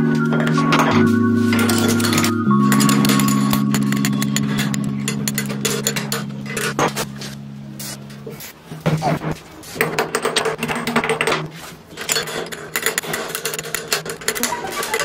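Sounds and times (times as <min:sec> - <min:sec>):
steady low tone: 0:00.0 - 0:09.4.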